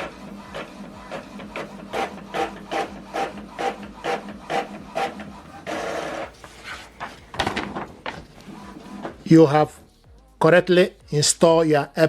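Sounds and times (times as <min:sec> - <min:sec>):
printer head shuttling: 0:00.0 - 0:09.3
printer whir: 0:00.0 - 0:09.9.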